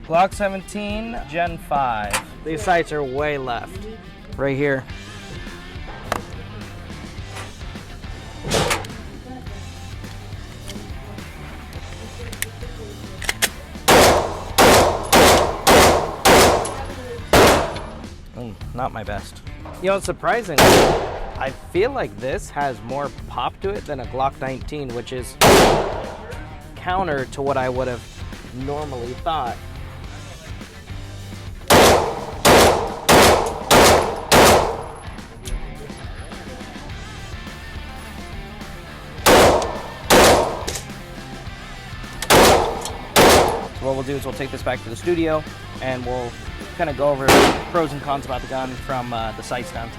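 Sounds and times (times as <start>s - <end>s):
pistol shots: 13.4s - 18.0s, 20.6s - 21.4s, 25.4s - 26.4s, 31.7s - 35.1s, 39.2s - 40.9s, 42.2s - 43.8s, 47.2s - 48.0s.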